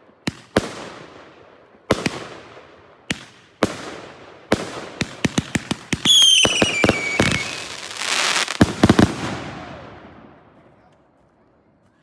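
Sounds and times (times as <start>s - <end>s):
firework cake reports and cracks: 4.6s - 10.9s
falling firework whistle: 6.1s - 8.6s.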